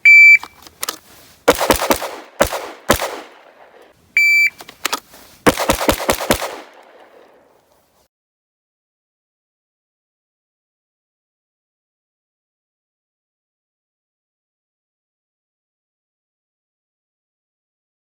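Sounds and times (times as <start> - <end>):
short electronic beep: 0.0 - 0.6, 4.2 - 4.6
pistol shots: 1.5 - 3.9, 5.5 - 7.3.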